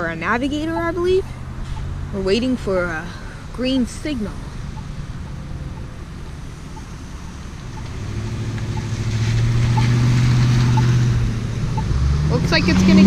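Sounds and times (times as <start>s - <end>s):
crosswalk locator tone ticks: 0.0s - 13.0s
road traffic: 0.0s - 13.0s
vehicle engine hum and road noise: 0.0s - 13.0s.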